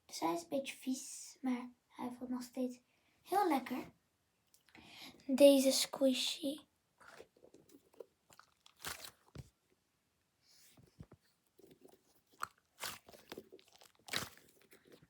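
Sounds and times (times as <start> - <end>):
crackles and rustles of foam toy: 10.5 - 15.0.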